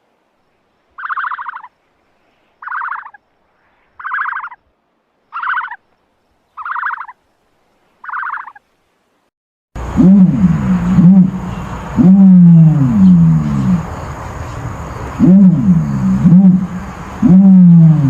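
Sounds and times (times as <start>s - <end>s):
ostrich buzzy pulsed calls: 1.0s - 1.7s, 2.6s - 3.2s, 4.0s - 4.7s, 5.3s - 5.8s, 6.6s - 7.2s, 8.0s - 8.6s, 9.8s - 18.0s.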